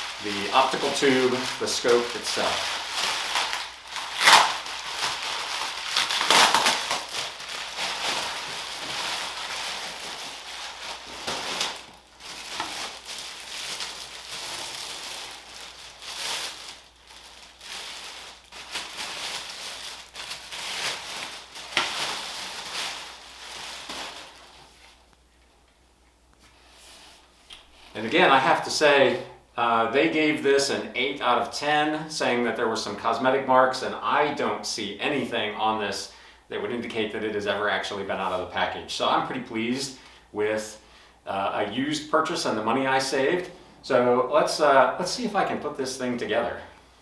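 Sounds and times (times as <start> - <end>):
packaging crinkling: 0.0 - 25.2.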